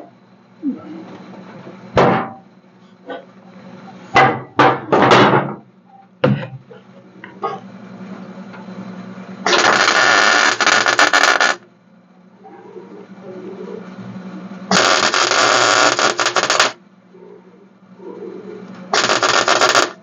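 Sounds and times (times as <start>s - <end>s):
welder crackling hiss: 9.5s - 11.6s, 14.7s - 16.8s, 18.9s - 20.0s.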